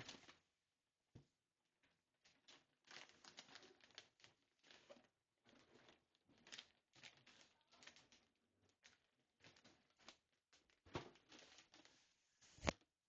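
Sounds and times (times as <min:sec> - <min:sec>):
gift packaging crinkling: 0:02.3 - 0:12.0.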